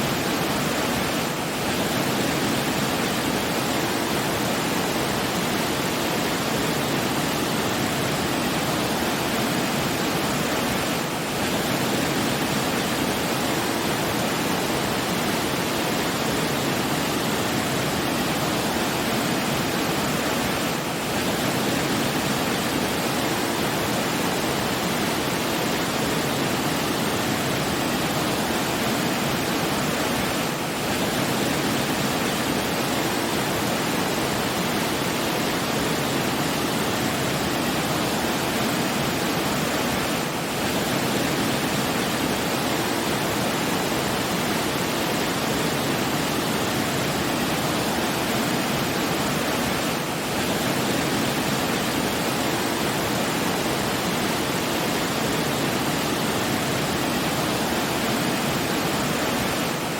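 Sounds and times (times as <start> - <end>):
rushing water: 0.0 - 59.9.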